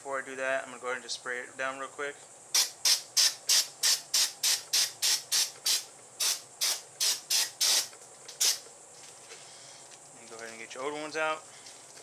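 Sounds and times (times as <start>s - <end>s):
aerosol can spraying hissing blasts: 2.5s - 8.6s.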